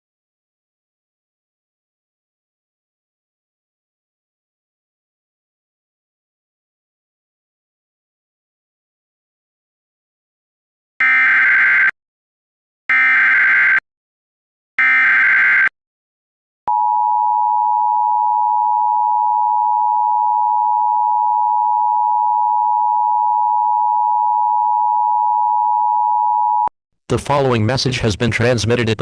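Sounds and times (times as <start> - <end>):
digital data tone bursts: 11.0 - 11.9, 12.9 - 13.8, 14.8 - 15.7.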